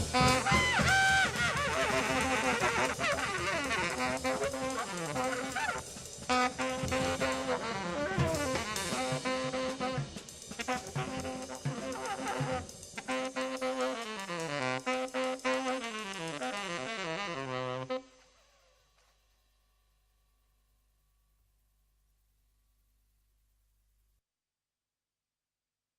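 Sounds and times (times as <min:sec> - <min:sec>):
drum kit steady beat: 0:00.0 - 0:18.0
jazzy brass and saxophone: 0:00.0 - 0:19.2.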